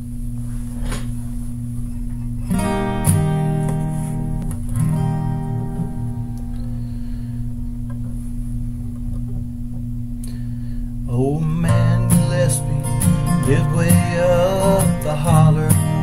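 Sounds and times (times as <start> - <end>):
acoustic guitar country music: 2.4 - 7.0, 11.2 - 16.0.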